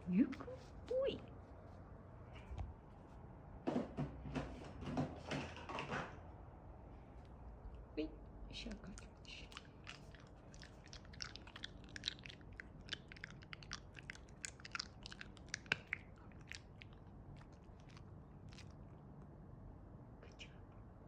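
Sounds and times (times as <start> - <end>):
dog making clicks and crunches: 8.9 - 18.9.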